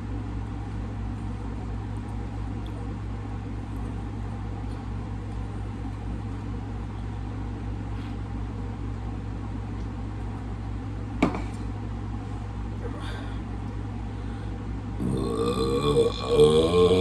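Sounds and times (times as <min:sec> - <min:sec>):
low room hum: 0:00.0 - 0:17.0.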